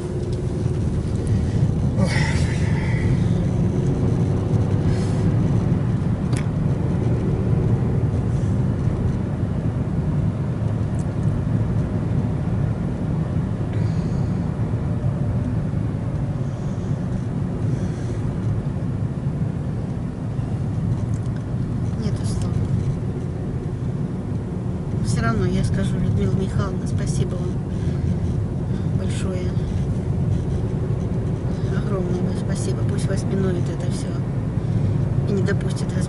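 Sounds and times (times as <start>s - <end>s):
car cabin rumble: 0.0s - 36.0s.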